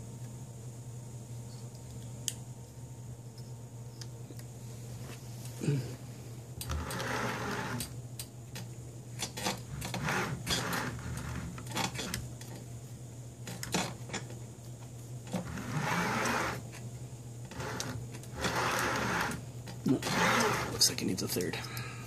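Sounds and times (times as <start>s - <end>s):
steady low hum: 0.0s - 22.0s
scraping rustle: 6.7s - 7.9s.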